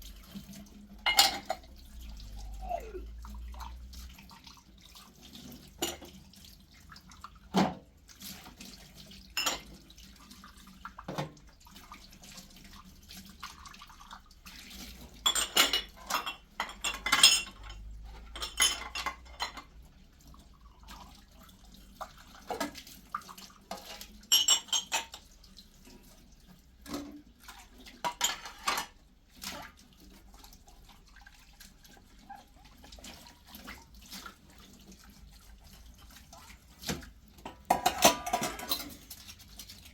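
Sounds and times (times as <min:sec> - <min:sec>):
kitchenware clinking: 0:01.0 - 0:01.7, 0:05.8 - 0:06.2, 0:09.4 - 0:09.8, 0:15.2 - 0:19.7, 0:23.8 - 0:25.3, 0:28.1 - 0:29.0, 0:37.4 - 0:39.5.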